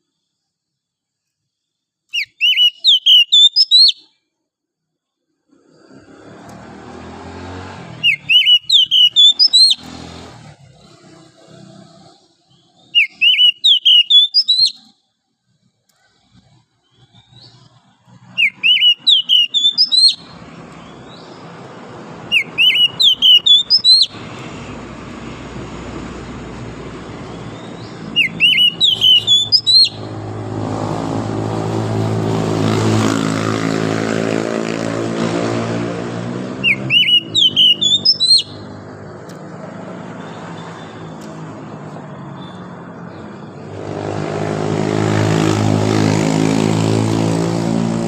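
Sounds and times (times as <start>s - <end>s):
bird singing whistled phrases: 2.2s - 4.1s, 8.0s - 9.9s, 12.8s - 14.9s, 18.4s - 20.4s, 22.3s - 24.2s, 27.3s - 30.1s, 36.6s - 38.7s
engine drone: 5.6s - 12.6s, 16.1s - 48.0s.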